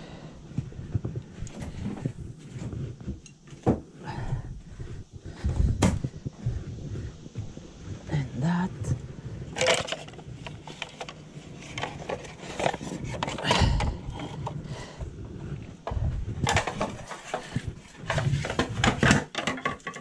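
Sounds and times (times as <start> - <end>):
heavy thumps: 0.5 - 8.2
objects knocking and scraping: 9.5 - 20.0.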